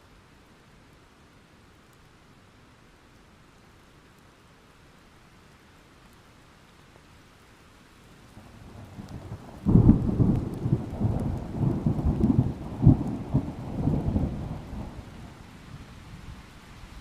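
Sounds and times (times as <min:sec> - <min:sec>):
steady rain: 0:00.0 - 0:17.0
thunder crack and rumble: 0:08.7 - 0:15.2.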